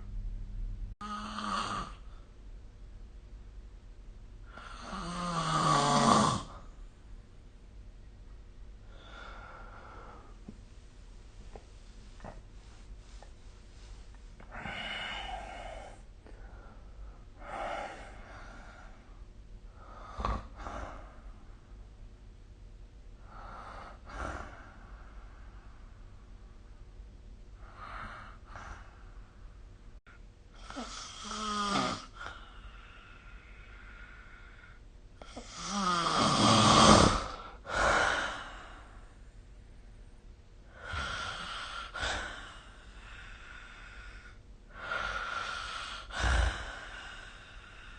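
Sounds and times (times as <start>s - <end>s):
person snoring: 1.0s - 2.1s, 4.5s - 6.7s, 14.5s - 16.0s, 30.6s - 32.9s, 35.2s - 38.8s, 40.7s - 47.9s.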